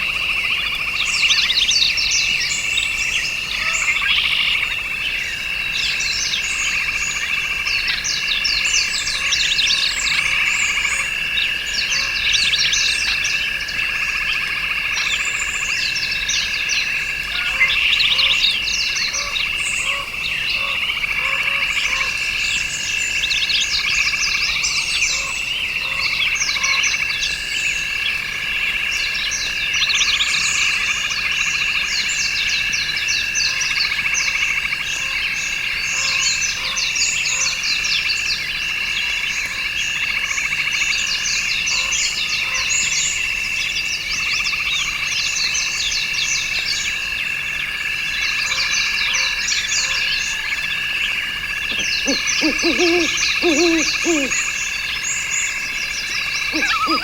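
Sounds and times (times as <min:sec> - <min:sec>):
high trills: 0:56.5 - 0:57.0.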